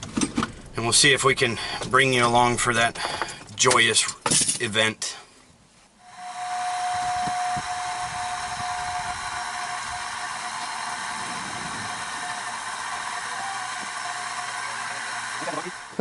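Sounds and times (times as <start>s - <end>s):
recovery machine hissing rush: 6.0s - 16.0s
steady high tone: 6.0s - 16.0s.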